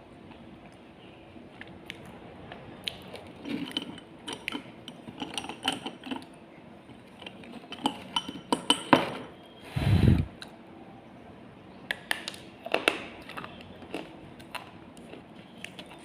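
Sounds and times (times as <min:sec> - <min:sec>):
crunching and chewing: 0:01.4 - 0:08.2, 0:11.9 - 0:16.0.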